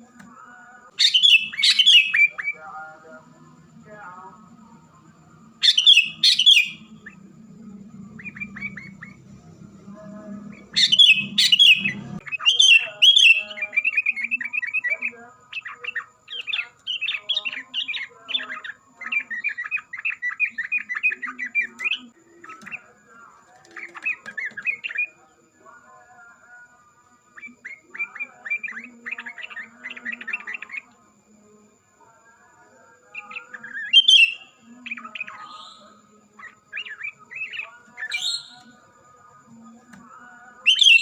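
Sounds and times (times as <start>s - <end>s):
bulbuls singing: 0.0s - 41.0s
low hum: 6.8s - 12.2s.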